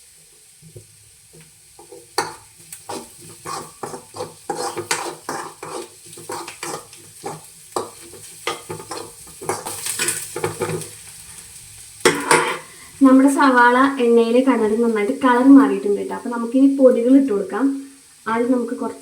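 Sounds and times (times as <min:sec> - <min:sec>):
onions sizzling in oil: 0:00.0 - 0:19.0
spoon scraping a pan: 0:00.8 - 0:12.9.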